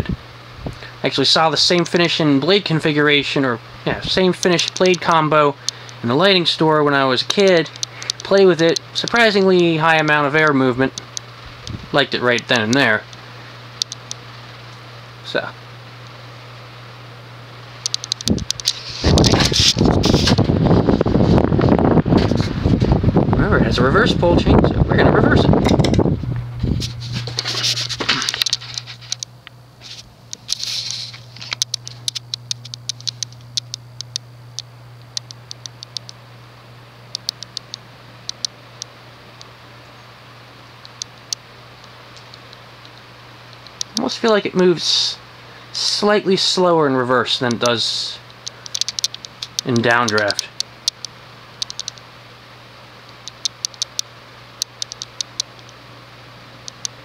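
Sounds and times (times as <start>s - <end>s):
ceiling fan motor humming: 0.0s - 57.0s
light ticks: 4.4s - 6.0s, 13.8s - 14.8s, 17.8s - 19.4s, 31.5s - 36.2s, 37.1s - 39.5s, 40.8s - 44.1s, 48.4s - 52.0s, 53.2s - 55.8s, 56.7s - 57.0s.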